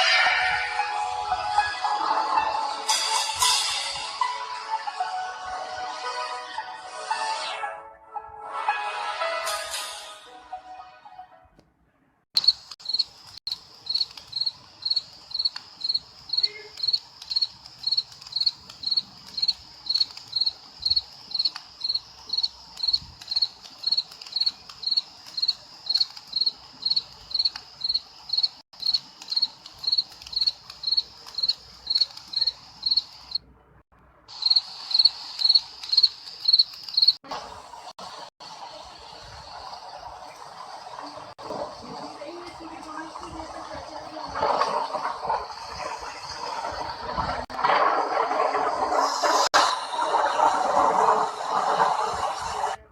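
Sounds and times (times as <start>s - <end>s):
cricket chirping: 12.4s - 33.4s, 34.3s - 37.2s.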